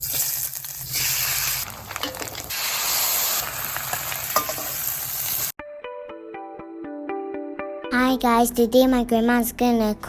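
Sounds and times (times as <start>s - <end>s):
noodles sizzling in hot oil: 0.0s - 5.6s.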